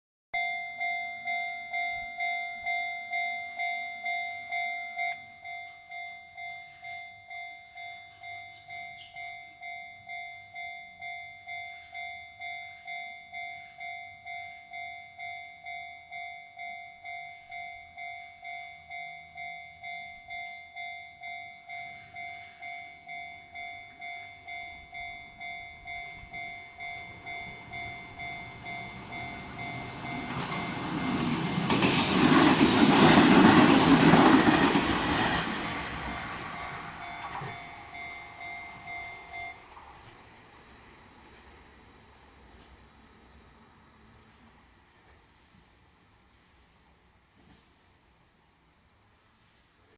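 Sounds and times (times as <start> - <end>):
level crossing alarm dinging: 0.4 - 44.2
approaching train rumble: 0.8 - 47.6.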